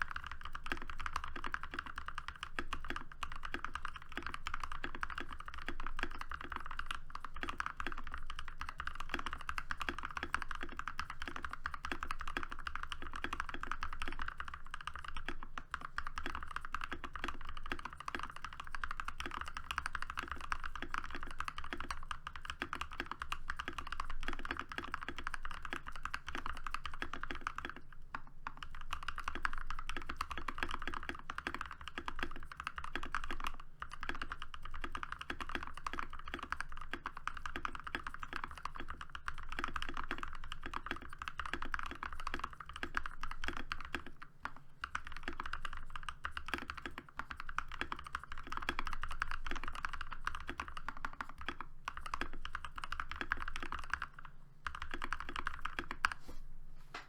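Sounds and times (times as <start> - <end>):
fast typing on mechanical keyboard: 0.0 - 56.2.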